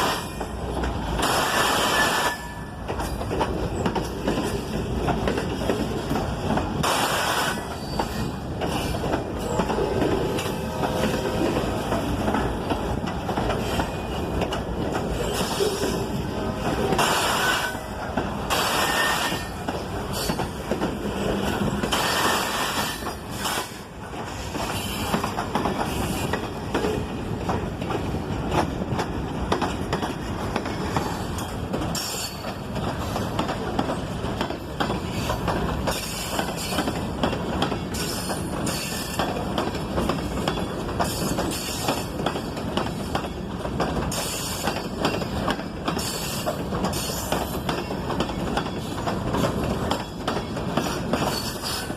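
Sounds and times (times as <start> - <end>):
freight train wheels clacking: 0.0 - 51.9
high-pitched wheel squeal: 18.8 - 19.6.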